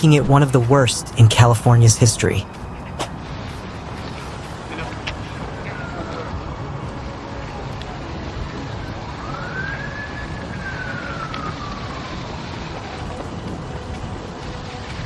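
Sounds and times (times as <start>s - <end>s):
emergency siren wailing: 0.0s - 15.0s
steady rushing noise: 0.0s - 15.0s.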